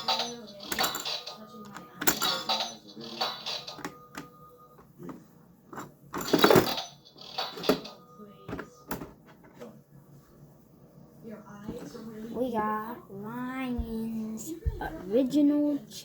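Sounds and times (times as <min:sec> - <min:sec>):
toy vending machine clicking and rattling: 0:00.0 - 0:04.3, 0:06.2 - 0:08.0.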